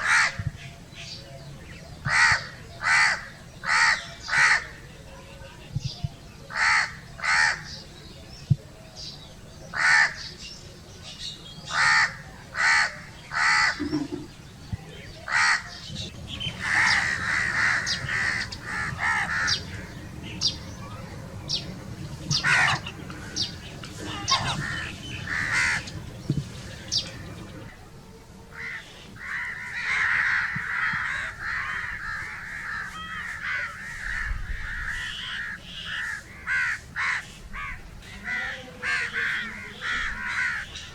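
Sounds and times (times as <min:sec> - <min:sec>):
crows cawing: 0:00.0 - 0:00.4, 0:02.1 - 0:04.8, 0:06.5 - 0:07.7, 0:09.7 - 0:10.2, 0:11.7 - 0:13.9, 0:15.3 - 0:15.8, 0:16.5 - 0:20.0, 0:22.3 - 0:26.1, 0:28.6 - 0:40.8.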